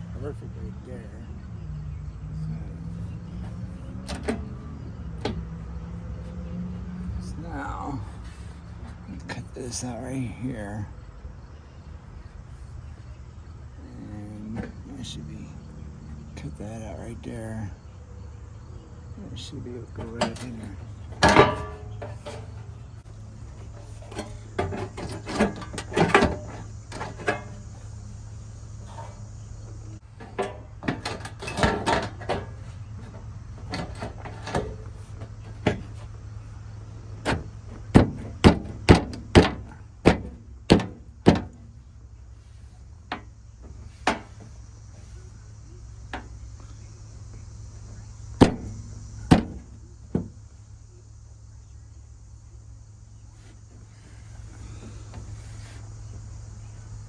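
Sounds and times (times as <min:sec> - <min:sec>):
steady low hum: 0:00.0 - 0:57.0
knocks on sheet metal: 0:37.3 - 0:41.6.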